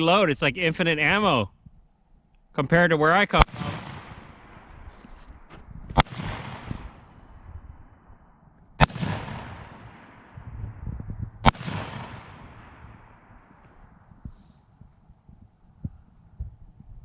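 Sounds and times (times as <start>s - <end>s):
rifle shots with echo: 3.4s - 10.5s, 11.4s - 14.0s.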